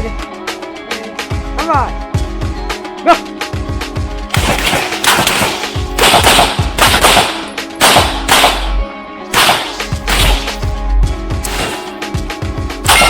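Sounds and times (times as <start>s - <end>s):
music playing: 0.0s - 13.0s
rapid gunshots with echo: 4.3s - 10.7s, 11.5s - 12.2s.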